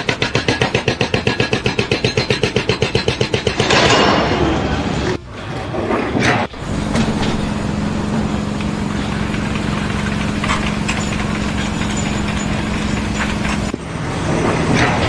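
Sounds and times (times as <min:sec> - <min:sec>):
engine running steadily: 0:06.5 - 0:15.0.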